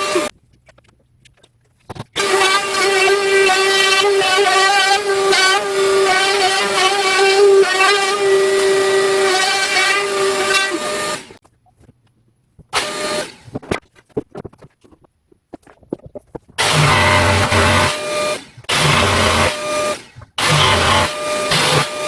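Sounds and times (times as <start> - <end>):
router whining while cutting wood: 0.0 - 0.3, 2.2 - 11.4, 12.8 - 13.5, 16.6 - 22.0.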